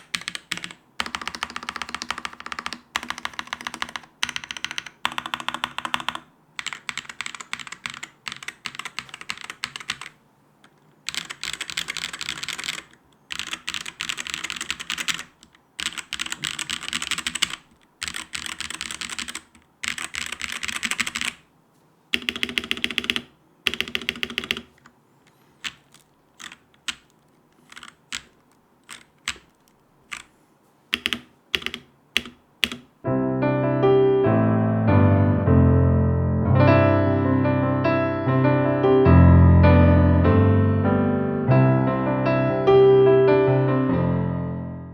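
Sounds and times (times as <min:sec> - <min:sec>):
mechanical keyboard typing: 0:00.0 - 0:21.5, 0:22.1 - 0:30.3, 0:30.9 - 0:33.0
piano music: 0:33.0 - 0:44.9.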